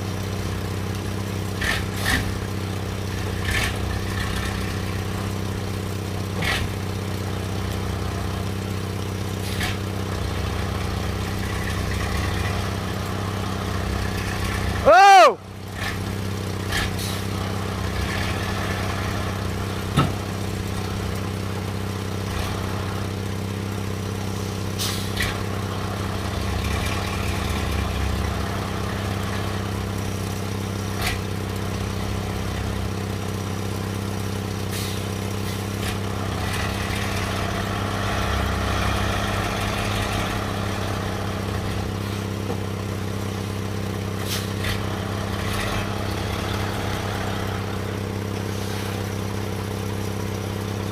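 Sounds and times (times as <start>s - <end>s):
engine running steadily: 0.0s - 50.9s
sharp knocks and clatter: 19.9s - 20.2s.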